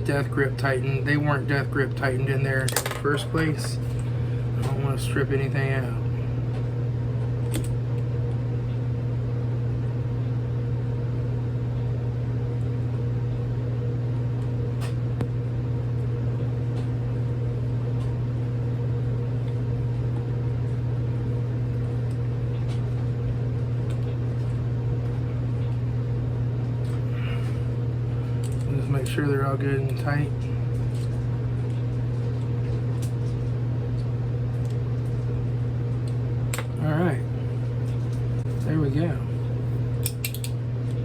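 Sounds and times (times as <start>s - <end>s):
low machine hum: 0.0s - 41.0s.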